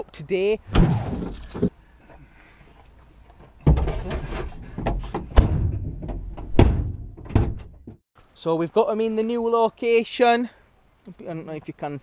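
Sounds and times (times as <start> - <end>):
knocks and thuds: 3.6 - 8.0.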